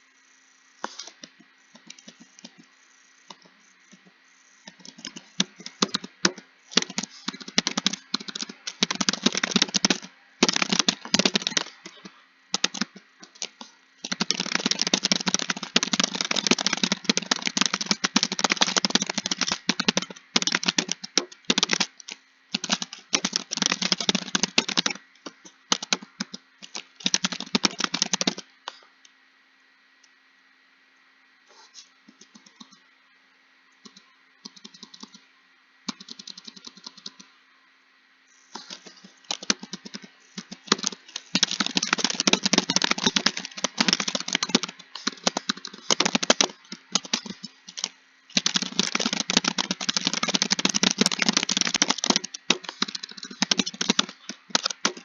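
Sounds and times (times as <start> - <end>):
keyboard keys clicking: 4.7 - 12.0, 12.6 - 28.4, 38.6 - 55.0.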